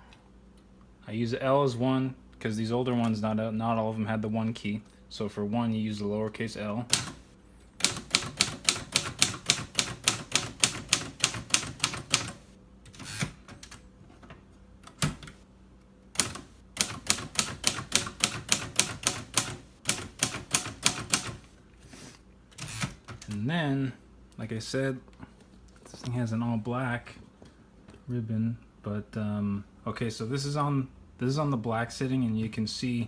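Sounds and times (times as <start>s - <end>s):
manual typewriter typing: 6.9s - 13.8s, 14.8s - 15.4s, 16.1s - 21.5s, 22.6s - 23.4s.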